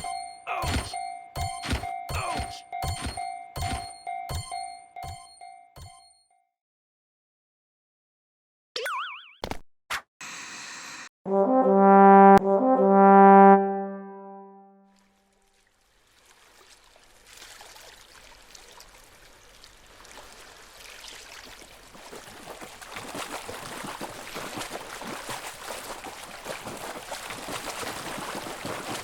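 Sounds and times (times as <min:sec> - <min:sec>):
rushing trickling water: 0:15.2 - 0:29.0.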